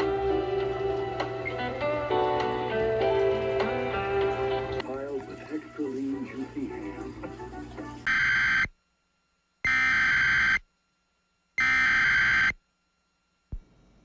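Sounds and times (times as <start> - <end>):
digital data tone bursts: 8.0 - 8.7, 9.7 - 10.6, 11.6 - 12.6.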